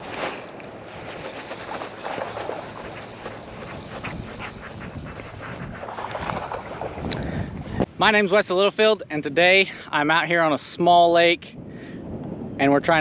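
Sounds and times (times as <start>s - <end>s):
water lapping against a boat hull: 0.0s - 7.9s
wind blowing across microphone: 1.7s - 13.0s.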